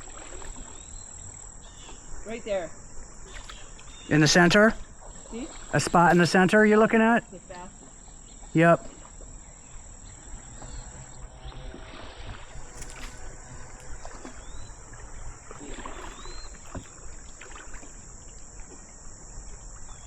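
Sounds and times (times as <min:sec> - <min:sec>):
insects droning: 0:00.0 - 0:20.0
kayak paddle splashing water: 0:00.0 - 0:20.0
paddle knocks: 0:11.9 - 0:17.8.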